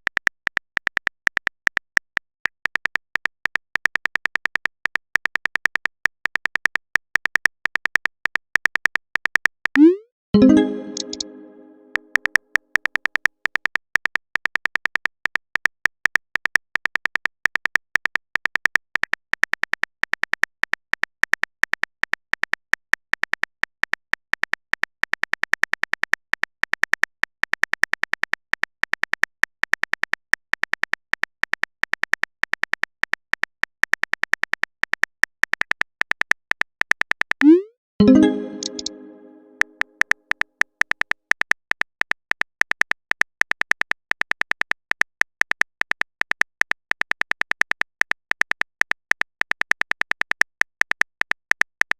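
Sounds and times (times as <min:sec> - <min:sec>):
typing clicks: 0:09.7 - 0:13.2, 0:37.4 - 0:39.8.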